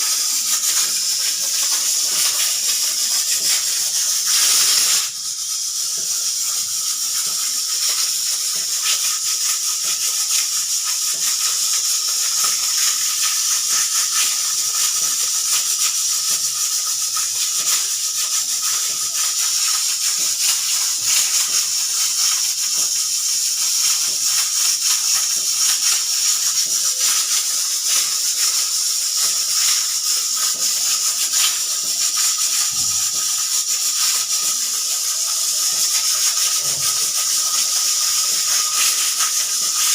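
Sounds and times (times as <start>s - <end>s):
pressure cooker venting steam: 0.0s - 39.9s.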